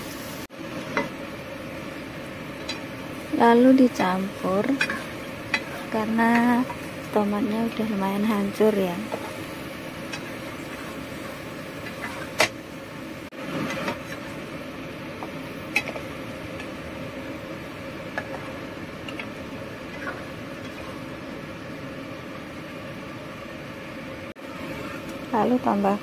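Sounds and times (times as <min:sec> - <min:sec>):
spatula scraping frying pan: 0:04.6 - 0:07.0.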